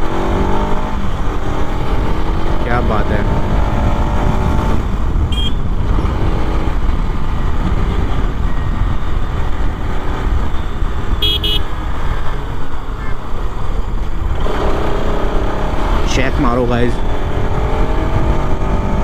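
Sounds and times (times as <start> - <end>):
wind rumble on microphone: 0.0 - 19.0
motorcycle engine running: 0.8 - 19.0
vehicle horn toots: 5.3 - 5.6, 10.6 - 11.7.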